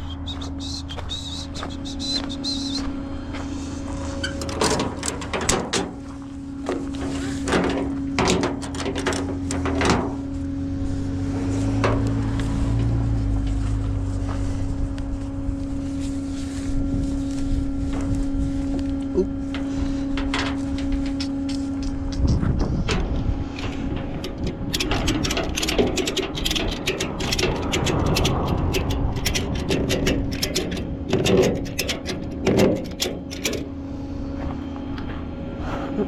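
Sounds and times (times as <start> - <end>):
low rumble: 0.0 - 33.0
steady hum: 0.0 - 36.0
sharp metallic clanks and knocks: 4.2 - 10.3, 11.7 - 12.2, 19.5 - 33.8.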